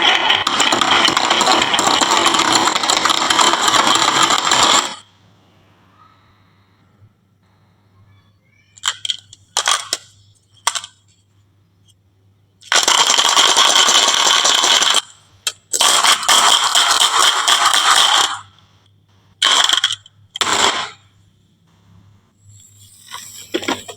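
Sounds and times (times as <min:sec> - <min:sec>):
marbles rattling down wooden run: 0:00.0 - 0:05.0.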